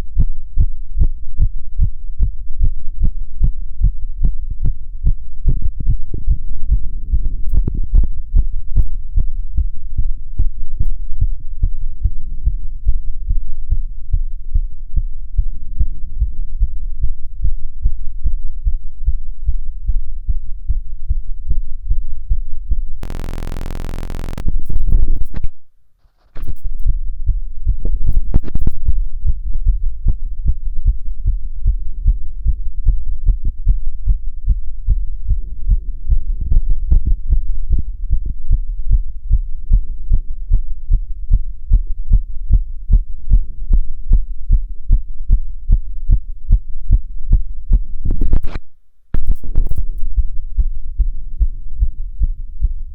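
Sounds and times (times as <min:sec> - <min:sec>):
fast heartbeat through stethoscope: 0:00.1 - 0:10.1
flat buzz: 0:23.0 - 0:25.7.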